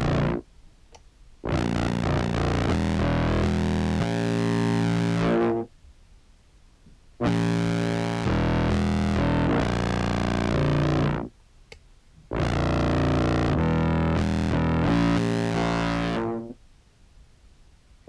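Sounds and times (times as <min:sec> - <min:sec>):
distorted low clarinet notes: 0:00.0 - 0:00.4, 0:01.5 - 0:05.7, 0:07.2 - 0:11.3, 0:12.3 - 0:16.6.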